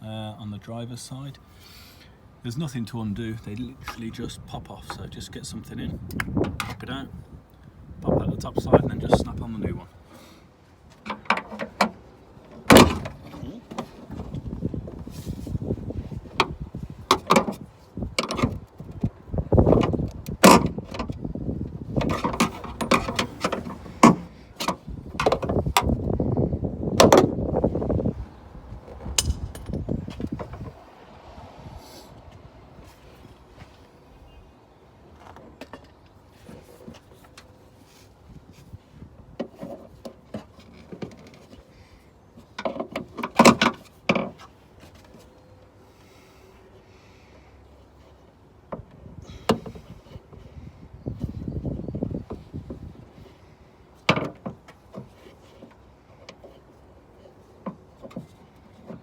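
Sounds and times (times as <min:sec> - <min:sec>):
gas strut clicks and knocks: 0:18.2 - 0:21.2, 0:22.0 - 0:26.0, 0:27.0 - 0:27.4
clattering and scraping: 0:21.9 - 0:26.0.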